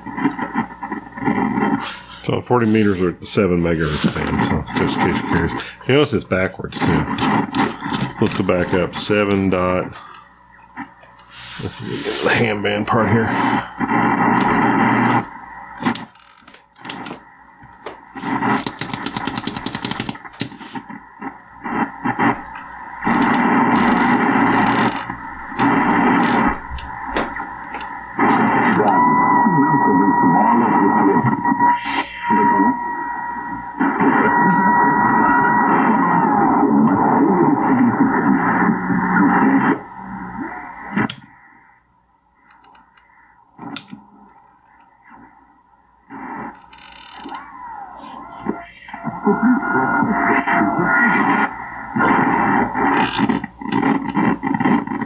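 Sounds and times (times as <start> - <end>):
fast chattering radio pulse: 0.0 - 41.3, 46.0 - 55.0
radio rush: 0.0 - 55.0
radio static and hiss: 0.0 - 55.0
sharp clicks: 15.8 - 28.5, 40.9 - 41.3.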